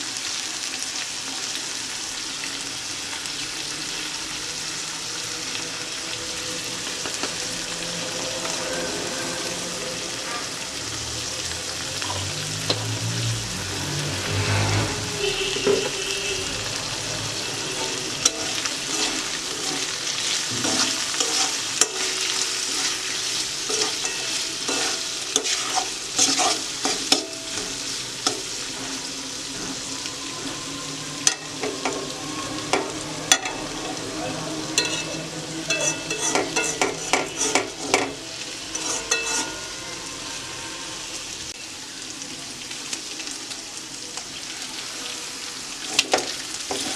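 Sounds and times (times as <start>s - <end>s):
meat sizzling in hot oil: 0.0s - 46.9s
spatula scraping a pan: 17.5s - 29.8s, 34.7s - 40.0s, 45.9s - 46.9s.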